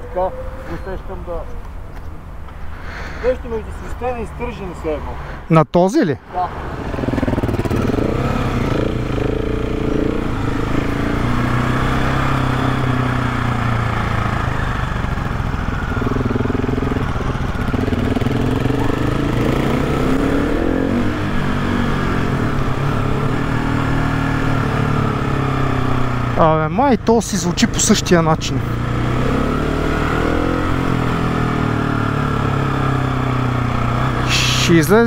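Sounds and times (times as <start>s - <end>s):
engine whining note: 0.0s - 1.4s
motorcycle engine running: 6.8s - 35.0s.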